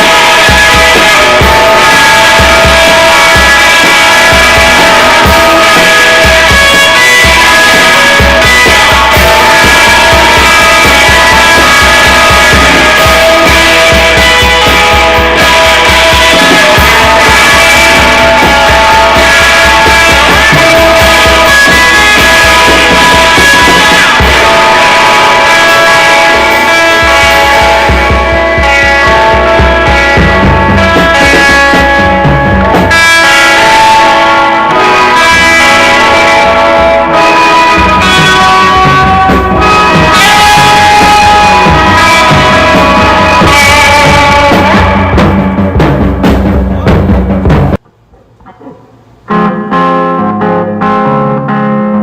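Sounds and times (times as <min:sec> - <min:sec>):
guitars sustained tones: 0:00.0 - 0:47.8, 0:49.2 - 0:52.0
psychedelic rock band: 0:00.0 - 0:47.8, 0:49.2 - 0:52.0
steady drum pulse: 0:00.0 - 0:47.8.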